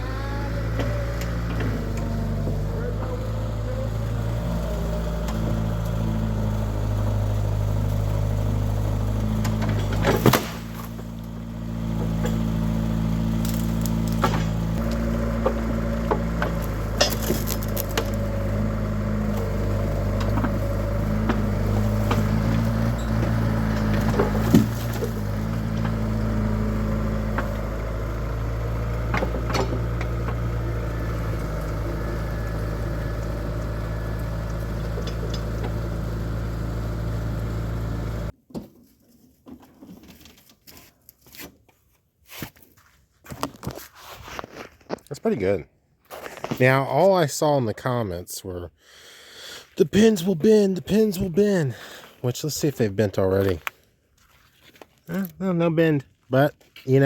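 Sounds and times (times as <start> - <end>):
excavator engine running: 0.0 - 38.4
knocks and clanks on log: 14.0 - 18.2, 20.2 - 26.0, 29.1 - 30.4.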